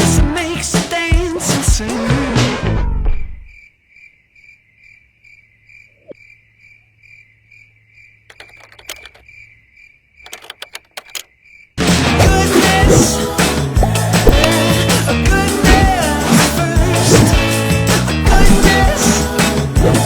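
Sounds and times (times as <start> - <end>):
music: 0.0 - 3.0, 11.8 - 20.0
sharp clicks: 8.3 - 9.3, 10.2 - 11.4.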